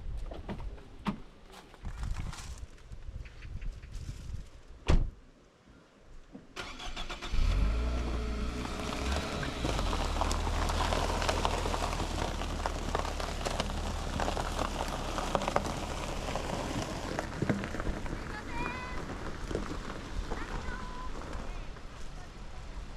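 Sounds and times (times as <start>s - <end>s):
engine starting and idling: 6.6s - 9.4s.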